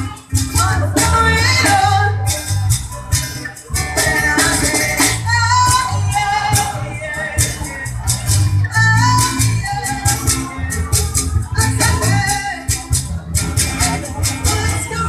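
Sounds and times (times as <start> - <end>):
person singing: 0.0 - 2.5
band playing: 0.0 - 15.0
rattling percussion: 0.0 - 15.0.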